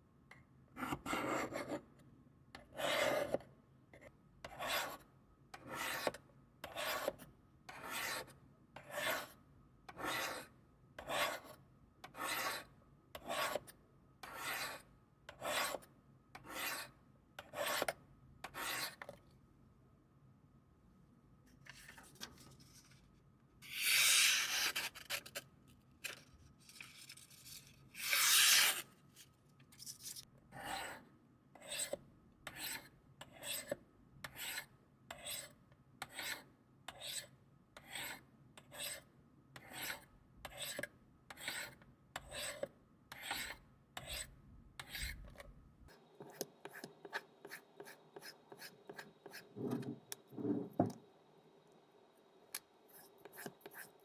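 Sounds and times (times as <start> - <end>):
knife scraping on sharpener: 28.0 - 28.8.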